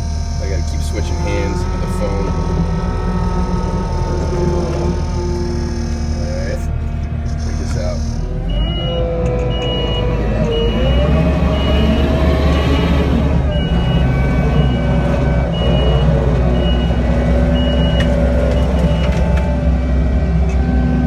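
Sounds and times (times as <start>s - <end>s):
diesel engine under load: 0.0s - 21.0s
backup alarm beeping: 5.0s - 19.5s.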